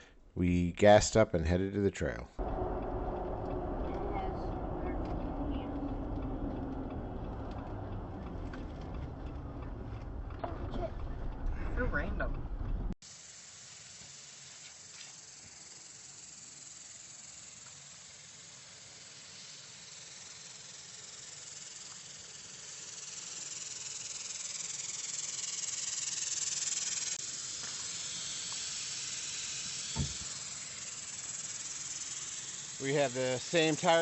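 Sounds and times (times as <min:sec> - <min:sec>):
air hissing out of a tire: 0:13.0 - 0:34.0.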